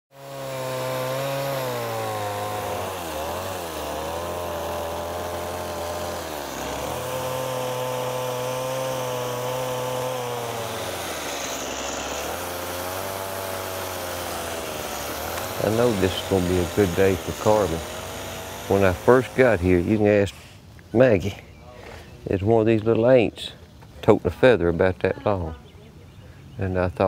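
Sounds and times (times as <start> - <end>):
chainsaw cutting wood: 0.1 - 20.3.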